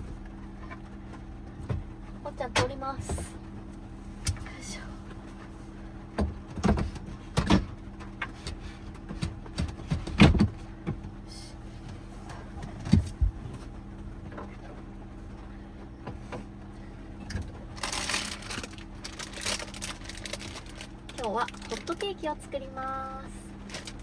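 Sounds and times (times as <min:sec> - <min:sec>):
faint steady hum: 0:00.0 - 0:24.0
knocks and thumps of handling: 0:06.2 - 0:11.2.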